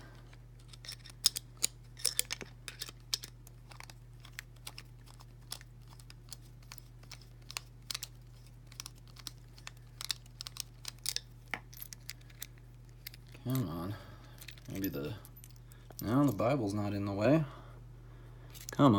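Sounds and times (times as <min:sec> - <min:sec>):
small metallic clicks and ticks: 0:00.6 - 0:13.4.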